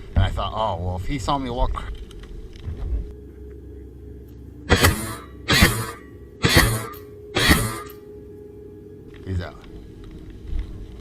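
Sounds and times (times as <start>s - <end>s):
person coughing: 4.7s - 7.9s.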